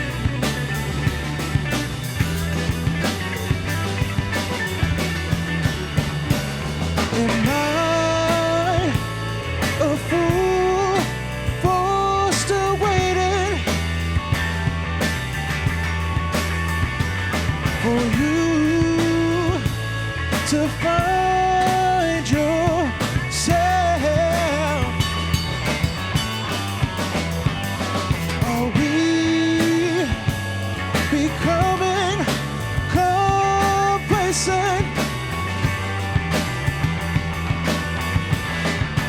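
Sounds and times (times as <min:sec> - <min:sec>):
bass guitar: 0:00.0 - 0:39.0
drum kit: 0:00.0 - 0:39.0
electric guitar lead line: 0:00.0 - 0:39.0.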